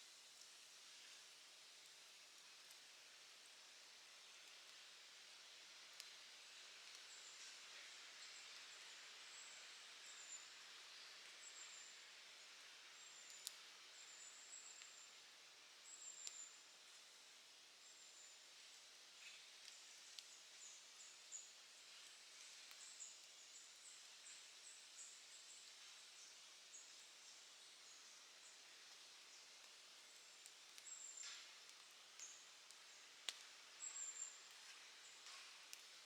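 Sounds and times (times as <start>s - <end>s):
campfire crackling and popping: 28.6s - 36.0s.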